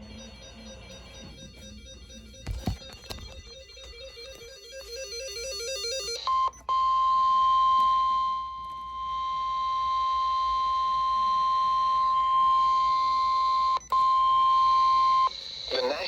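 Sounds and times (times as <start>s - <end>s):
electronic keyboard music: 0.0s - 6.6s
steady warning beep: 0.0s - 16.0s.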